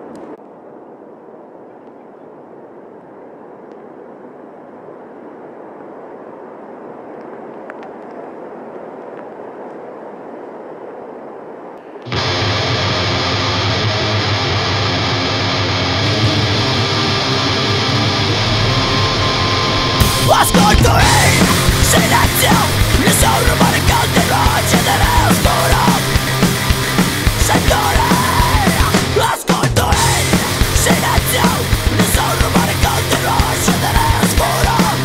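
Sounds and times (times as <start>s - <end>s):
loud music with guitar: 12.1s - 35.0s
surf rumbling: 12.1s - 35.0s.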